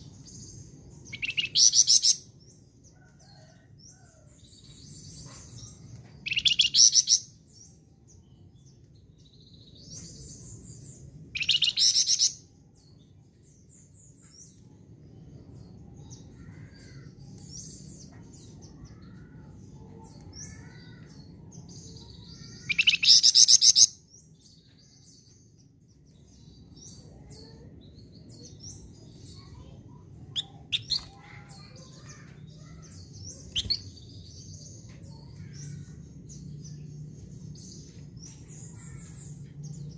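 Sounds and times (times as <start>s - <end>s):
bird chirps: 0.0s - 2.3s, 4.0s - 7.2s, 9.4s - 12.9s, 16.1s - 25.4s, 26.0s - 36.0s
low background hum: 0.0s - 39.9s
songbird buzzy trills: 22.0s - 23.9s, 28.9s - 34.3s.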